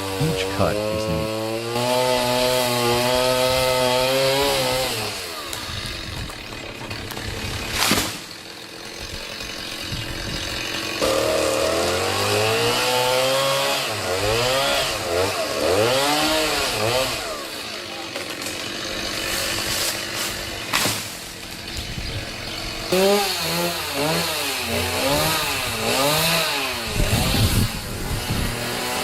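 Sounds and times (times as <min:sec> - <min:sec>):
chainsaw engine revving: 0:00.0 - 0:29.0
sharp crack: 0:06.5 - 0:08.3, 0:19.3 - 0:21.6.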